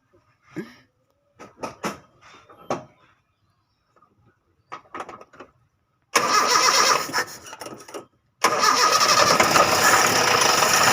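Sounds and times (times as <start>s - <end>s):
car engine cranking and firing: 6.2s - 7.8s, 8.4s - 10.9s.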